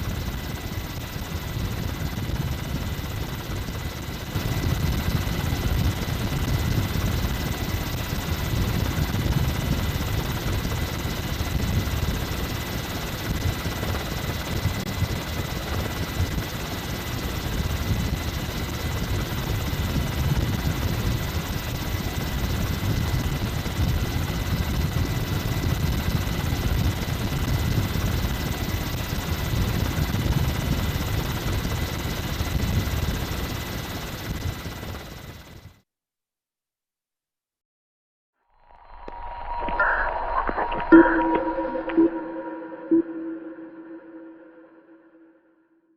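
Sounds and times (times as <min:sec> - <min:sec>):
engine-like drone: 0:38.5 - 0:45.3
faint high whine: 0:38.5 - 0:45.4.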